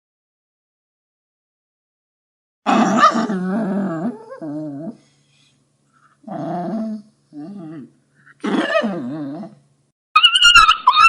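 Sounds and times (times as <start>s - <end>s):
puppy whining: 2.7s - 5.6s, 6.2s - 9.6s, 10.2s - 11.0s.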